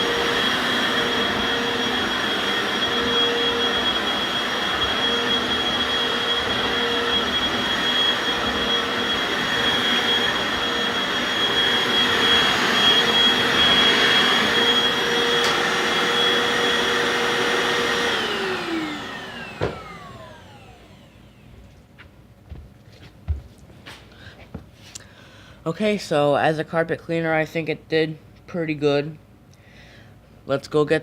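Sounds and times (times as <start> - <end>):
carpet washer whining: 0.0 - 21.8.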